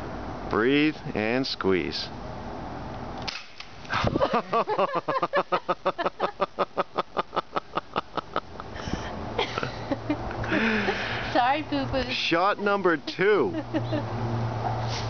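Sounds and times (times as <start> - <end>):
air pistol shot: 3.2 - 3.8.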